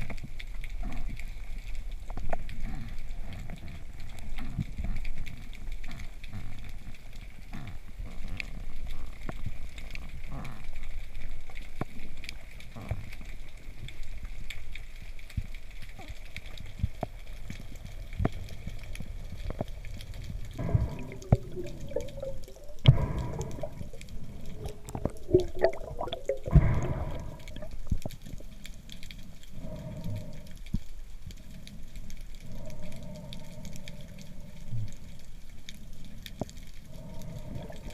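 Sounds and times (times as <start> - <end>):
sharp clicks underwater: 0.0 - 37.9
low underwater rumble: 12.4 - 37.9
water bubbling and gurgling: 15.6 - 30.4, 36.7 - 37.9.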